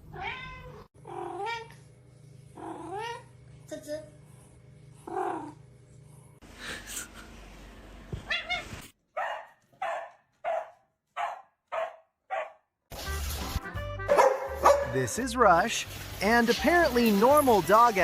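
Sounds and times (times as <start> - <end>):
dog barking: 9.2 - 12.7, 14.1 - 15.0.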